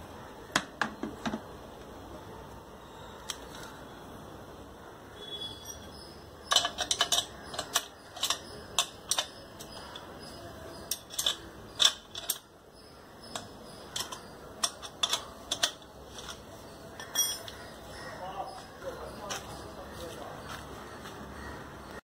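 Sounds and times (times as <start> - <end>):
metal wrench parts clinking: 5.7 - 12.6, 13.2 - 17.8.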